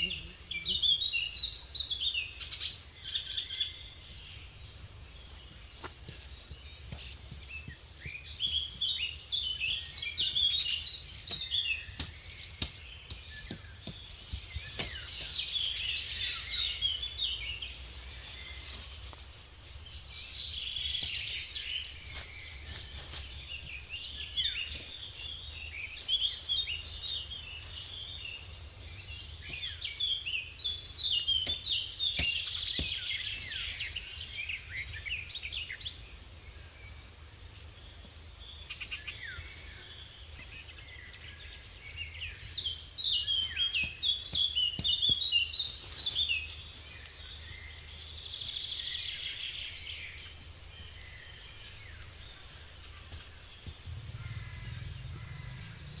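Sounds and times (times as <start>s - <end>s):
songbirds chirping: 0.0s - 56.0s
low background rumble: 53.6s - 56.0s.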